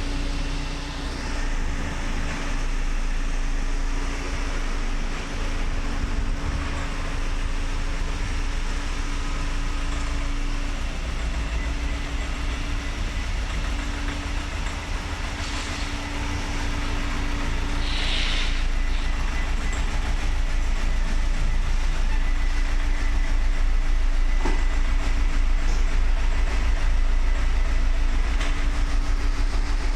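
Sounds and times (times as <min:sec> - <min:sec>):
car engine low rumble: 0:00.0 - 0:29.9
brief hiss: 0:17.8 - 0:18.6.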